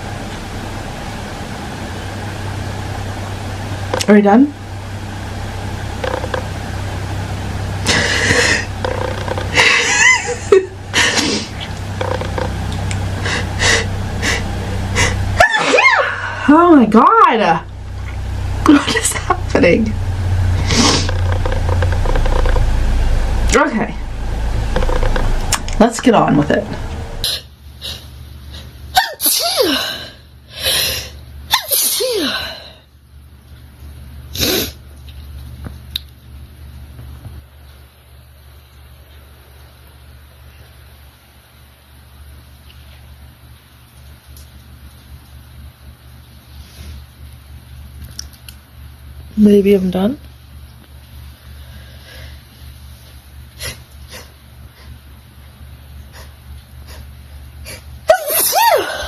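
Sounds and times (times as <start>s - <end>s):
breathy bursts: 7.8s - 8.8s, 13.0s - 15.4s, 20.5s - 25.9s
woman sneezing: 29.0s - 30.0s, 31.5s - 32.6s, 58.1s - 59.0s.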